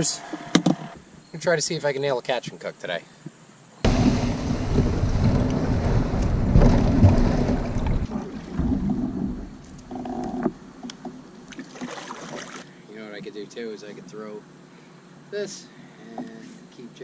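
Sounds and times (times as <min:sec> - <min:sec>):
wind buffeting microphone: 0:03.8 - 0:09.9.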